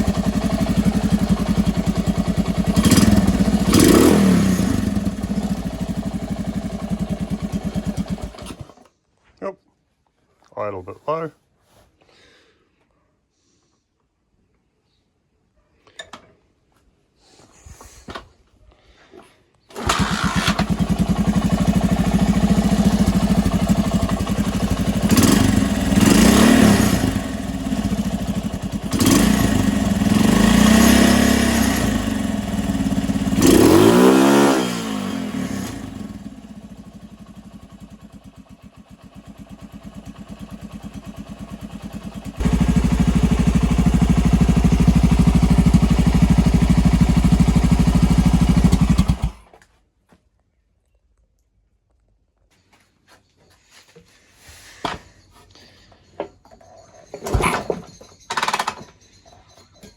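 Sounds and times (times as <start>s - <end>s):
motorcycle engine revving and idling: 0.0s - 8.8s, 19.7s - 49.5s.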